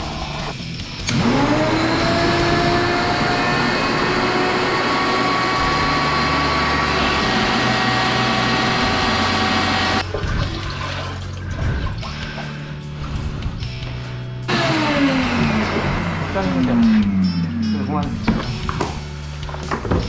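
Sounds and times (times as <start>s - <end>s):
suction machine motor whine: 1.0s - 10.0s, 14.5s - 17.8s.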